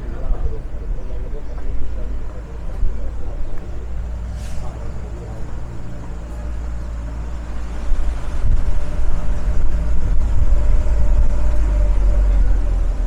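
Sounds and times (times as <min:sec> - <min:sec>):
deep engine rumble: 0:00.0 - 0:13.0.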